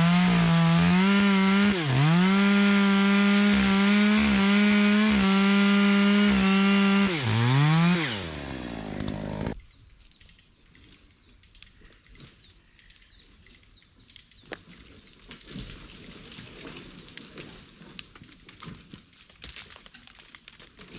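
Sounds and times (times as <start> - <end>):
chainsaw running: 0.0 - 9.6.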